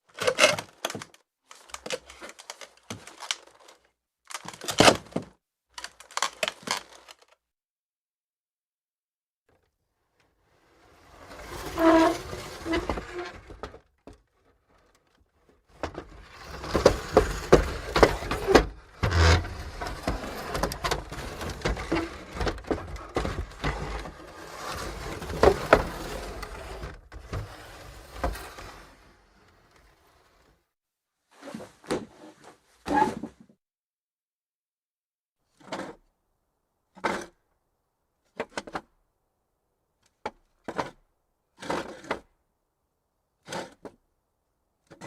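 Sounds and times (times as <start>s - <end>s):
chair scraping across floor: 10.4s - 13.8s, 15.7s - 30.7s, 31.3s - 33.5s
wooden chair creaking: 11.1s - 14.2s, 15.8s - 30.0s
chair squeak: 11.4s - 13.6s, 32.9s - 33.4s.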